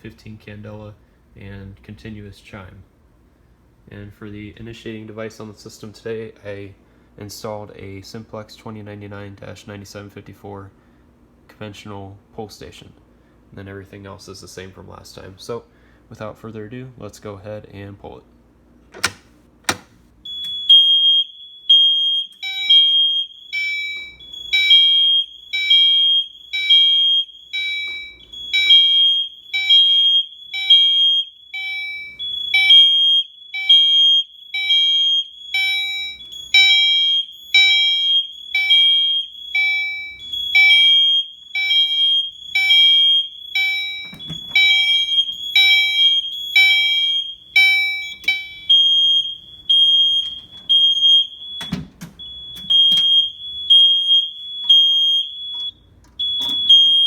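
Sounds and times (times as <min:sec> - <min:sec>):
fire alarm horn: 0:20.2 - 0:57.0
fire alarm chime strikes: 0:20.3 - 0:57.0.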